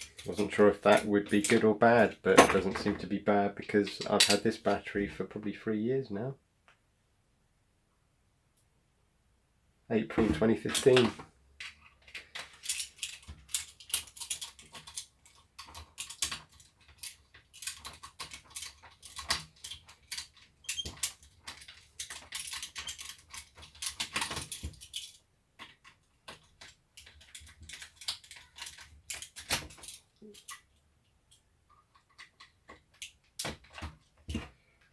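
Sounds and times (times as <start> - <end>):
plastic housing clicks and rattles: 10.8 - 30.7.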